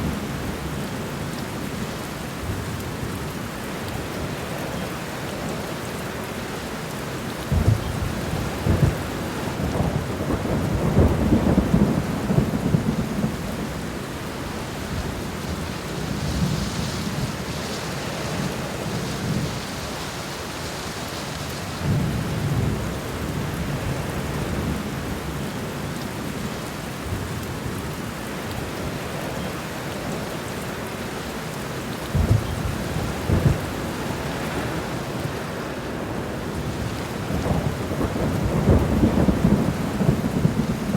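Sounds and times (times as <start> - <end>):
heavy rain: 0.0 - 40.9
thunder rumbling: 7.5 - 14.1, 32.1 - 35.4, 36.0 - 40.9.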